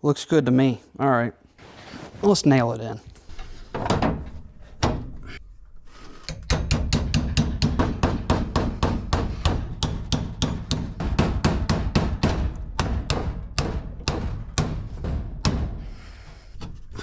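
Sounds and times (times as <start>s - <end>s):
hammer driving nails into wood: 6.3s - 16.1s.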